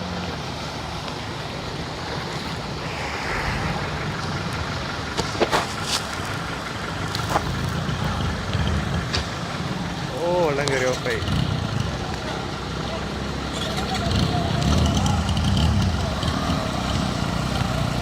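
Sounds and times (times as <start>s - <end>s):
vehicle engine rumbling: 1.5s - 9.8s.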